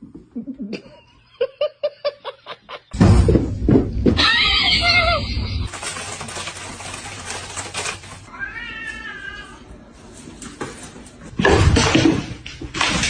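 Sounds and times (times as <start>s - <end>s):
cat meowing: 8.3s - 9.6s.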